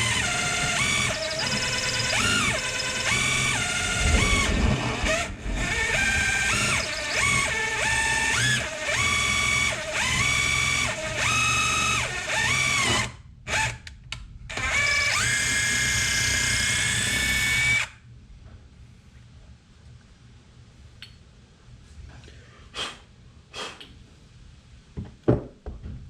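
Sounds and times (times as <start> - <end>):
electric drill whining: 0.0 - 13.9, 14.5 - 18.0.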